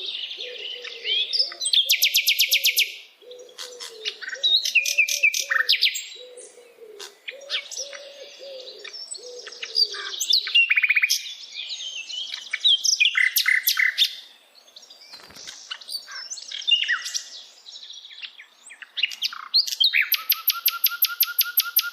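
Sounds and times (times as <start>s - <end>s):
birds chirping and trilling: 0.0s - 21.9s
low wavering bird call: 20.0s - 21.9s.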